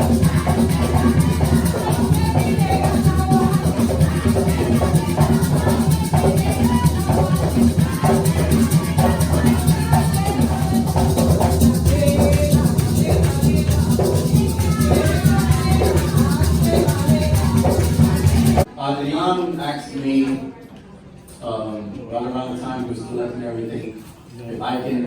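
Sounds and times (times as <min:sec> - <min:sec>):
maraca rhythm: 0:00.0 - 0:18.7.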